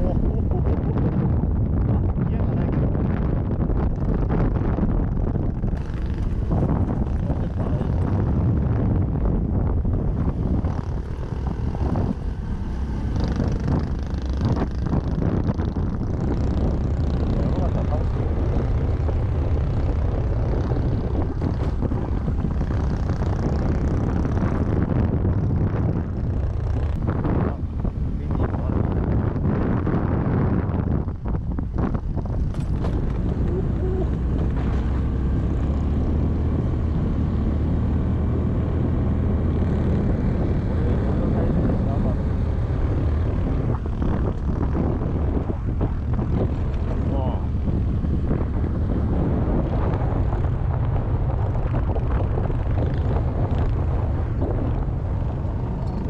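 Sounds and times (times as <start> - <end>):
motorcycle engine running: 0.0 - 56.0
road and wind noise: 0.0 - 56.0
small motorcycle engine running: 10.1 - 30.0.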